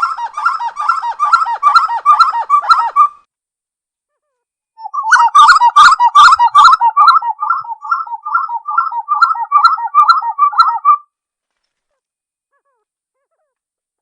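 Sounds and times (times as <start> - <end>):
wood-quail singing: 0.0 - 3.2, 4.8 - 11.0.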